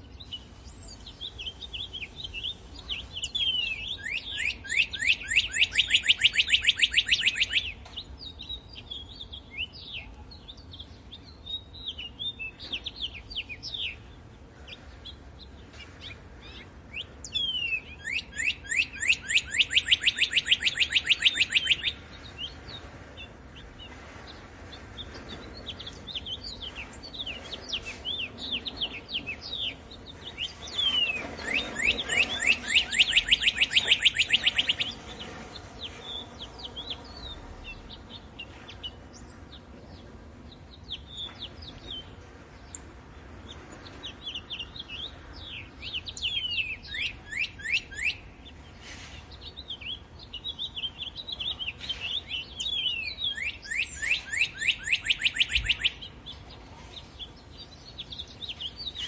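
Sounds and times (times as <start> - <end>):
songbird trills: 0.0 - 59.0
bird chirps and whistles: 1.2 - 7.8, 17.3 - 22.0, 30.4 - 35.1, 44.6 - 48.3, 49.8 - 56.1.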